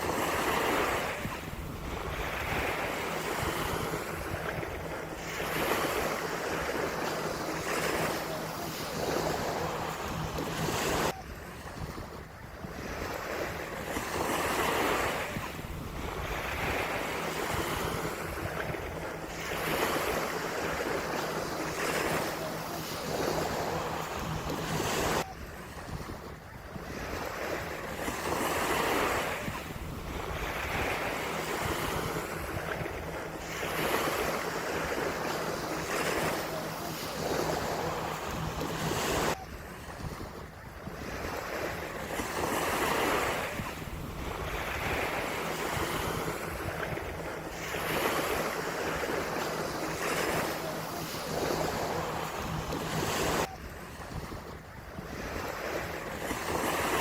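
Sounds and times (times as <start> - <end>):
ocean surf on sandy beach: 0.0 - 57.0
wind on microphone: 0.0 - 57.0.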